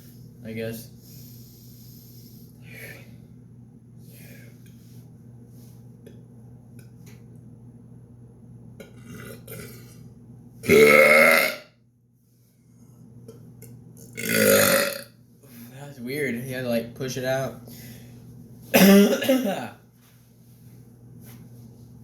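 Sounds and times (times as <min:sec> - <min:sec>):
faint breathing: 0:01.0 - 0:03.4, 0:04.0 - 0:05.1, 0:17.6 - 0:18.3
man belching: 0:08.8 - 0:09.8, 0:10.6 - 0:11.7, 0:14.1 - 0:15.1.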